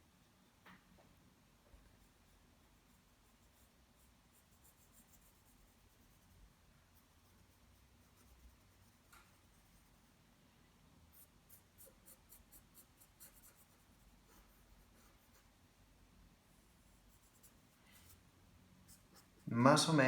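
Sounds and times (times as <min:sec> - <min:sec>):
pencil scratching on paper: 0:02.0 - 0:10.2, 0:11.1 - 0:15.6, 0:16.6 - 0:19.5.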